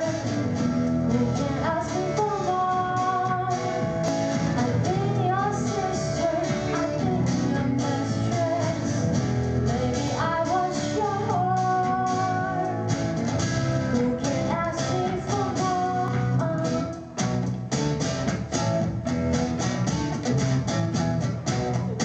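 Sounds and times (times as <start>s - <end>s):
woman singing pop-rock song: 0.0s - 17.2s.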